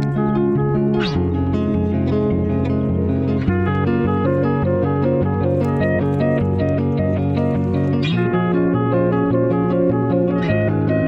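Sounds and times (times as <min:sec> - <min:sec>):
plucked guitar background music: 0:00.0 - 0:11.0.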